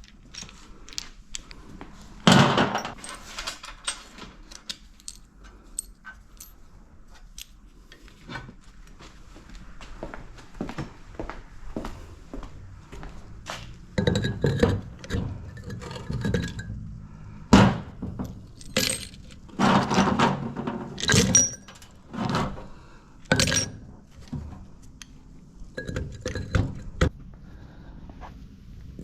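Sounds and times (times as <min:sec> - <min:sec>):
scrap brass clattering: 0:00.0 - 0:06.6, 0:14.0 - 0:22.7, 0:23.3 - 0:24.4.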